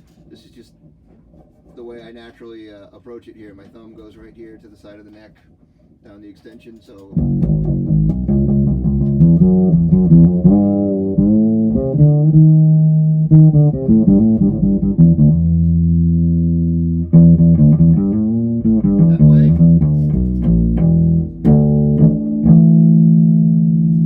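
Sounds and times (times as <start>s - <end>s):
fretless bass plucked notes: 7.2s - 24.0s.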